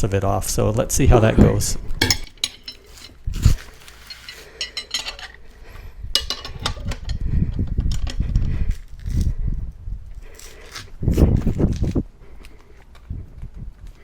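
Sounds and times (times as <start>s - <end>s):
metal tools clinking on wheel rim: 2.0s - 3.2s, 3.8s - 5.4s, 6.2s - 7.2s.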